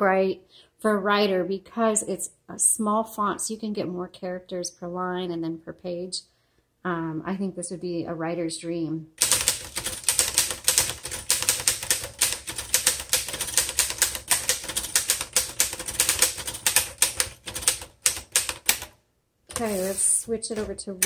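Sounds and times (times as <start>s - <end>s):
manual typewriter typing: 9.2s - 20.8s.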